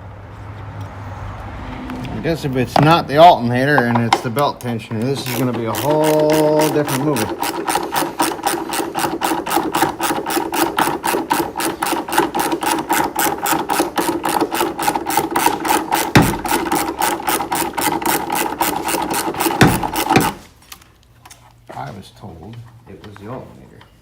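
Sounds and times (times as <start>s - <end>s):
ratchet wrench clicking: 5.0s - 20.4s
low thumps: 16.2s - 16.6s.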